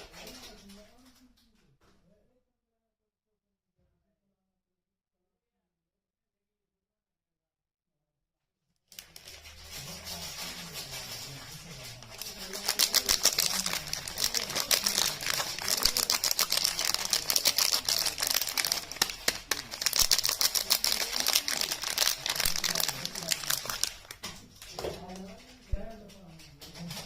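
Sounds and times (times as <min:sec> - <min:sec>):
packaging crinkling: 0:08.9 - 0:24.4.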